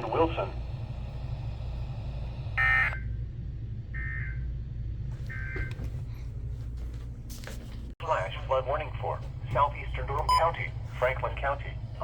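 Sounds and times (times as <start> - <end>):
low radio hum: 0.0 - 12.0.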